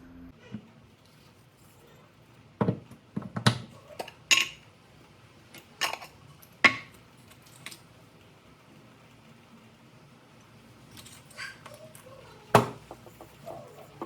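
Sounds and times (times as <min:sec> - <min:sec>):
kitchen utensils and dishes clinking: 0:00.5 - 0:04.7, 0:05.5 - 0:07.9, 0:10.8 - 0:14.0.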